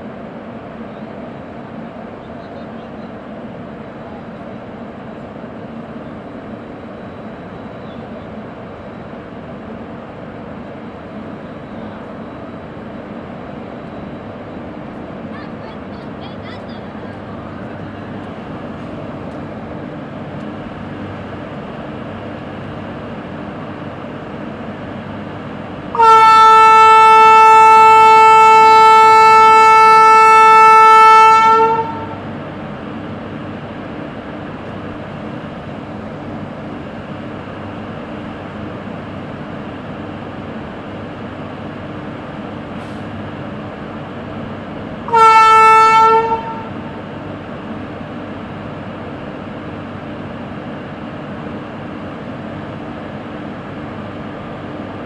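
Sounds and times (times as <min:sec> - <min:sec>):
idling locomotive hum: 0:00.0 - 0:55.0
locomotive horn blast: 0:25.9 - 0:32.2, 0:45.0 - 0:46.8.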